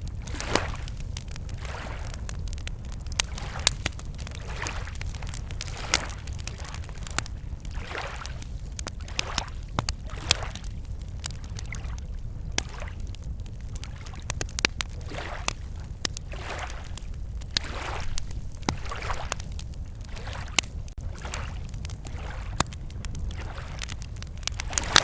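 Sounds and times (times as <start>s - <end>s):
campfire crackling and popping: 0.0s - 25.0s
waves lapping on shore: 0.2s - 2.2s, 3.2s - 10.6s, 15.0s - 19.4s, 20.1s - 22.7s.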